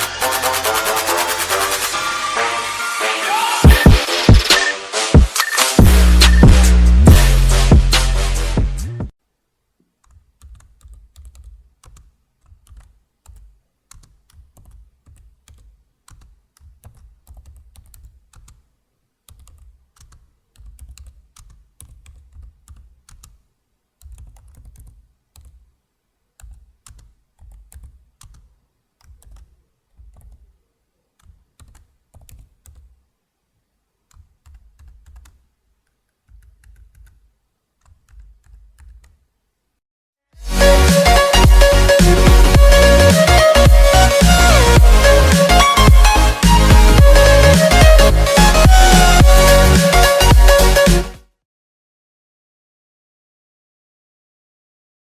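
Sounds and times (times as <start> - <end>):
keyboard typing: 3.8 - 6.7, 10.0 - 25.7, 26.4 - 30.6, 31.2 - 33.0, 34.1 - 39.2.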